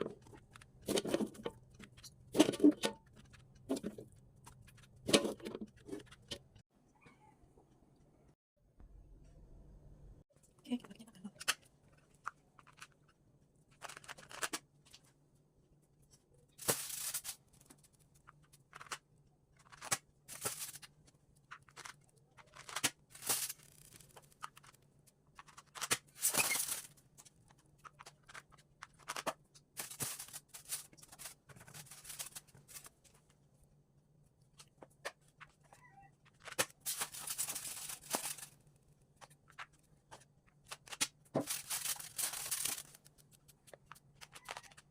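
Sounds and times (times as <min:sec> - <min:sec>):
faint low hum: 0:06.8 - 0:11.3
material rustling and crinkling: 0:25.4 - 0:33.4, 0:36.2 - 0:44.9.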